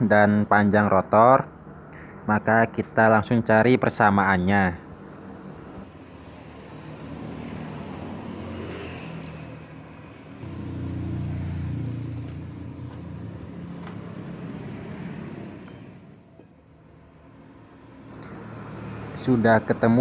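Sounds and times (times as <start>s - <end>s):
passing vehicle engine rumble: 5.3s - 16.3s, 16.9s - 20.0s.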